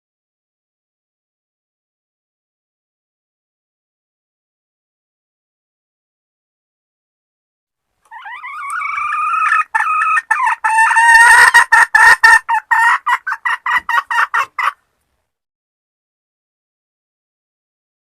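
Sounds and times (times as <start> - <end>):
junglefowl hen calling: 8.1 - 14.8.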